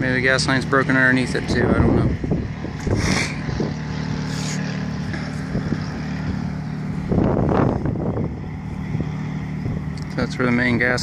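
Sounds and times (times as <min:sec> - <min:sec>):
low machine hum: 0:00.0 - 0:11.0
wind buffeting microphone: 0:00.0 - 0:11.0.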